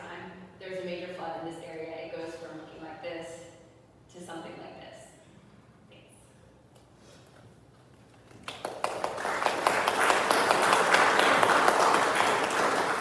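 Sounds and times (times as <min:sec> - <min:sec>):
audience applauding: 0:08.2 - 0:13.0.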